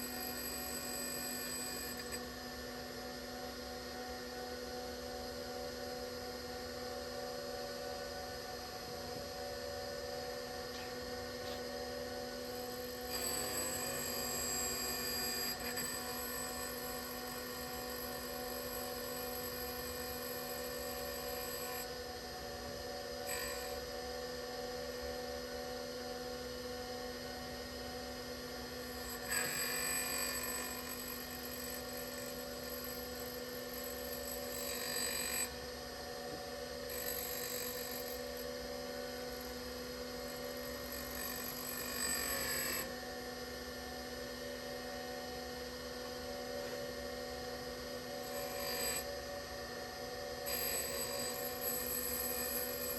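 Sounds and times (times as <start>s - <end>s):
surface grinder whine: 0.0s - 52.9s.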